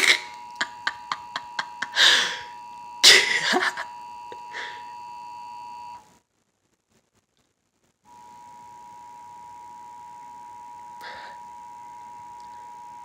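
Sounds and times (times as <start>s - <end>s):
person's breathy bursts: 2.0s - 2.5s.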